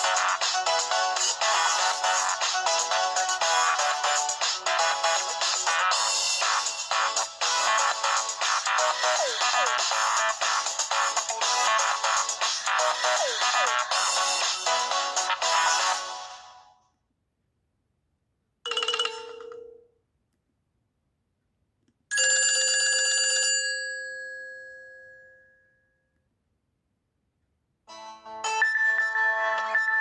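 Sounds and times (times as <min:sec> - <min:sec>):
ringtone tune: 0:00.0 - 0:16.7, 0:27.9 - 0:30.0.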